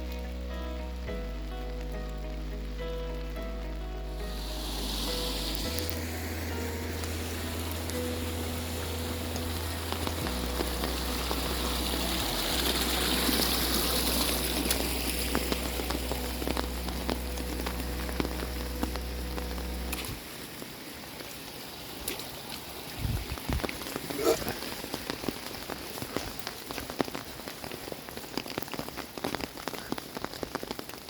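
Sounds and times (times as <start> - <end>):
low synth music: 0.0 - 20.2
running water: 0.0 - 31.0
steady rain: 0.0 - 31.0
water drips clicking: 0.0 - 31.0.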